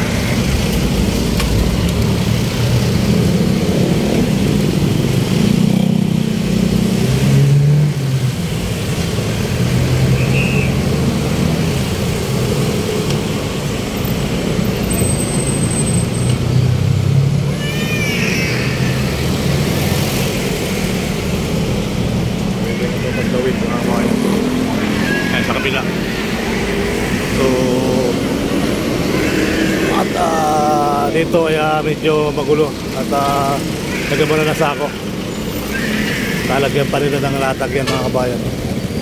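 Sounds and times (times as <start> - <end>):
vehicles passing: 0.0 - 39.0.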